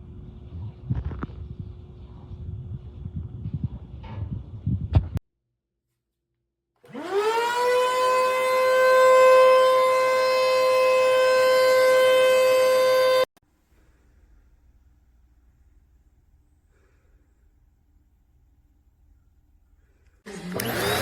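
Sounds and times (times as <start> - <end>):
vacuum cleaner motor whine: 6.8 - 13.3, 20.3 - 21.0.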